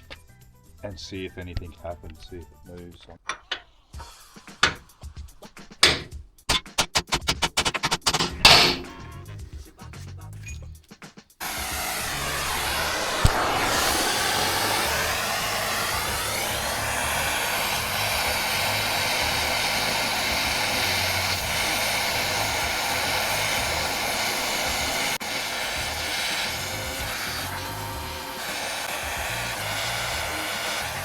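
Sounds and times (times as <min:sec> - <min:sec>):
heating tool blast: 0:04.0 - 0:04.9, 0:05.7 - 0:09.2, 0:11.4 - 0:31.0.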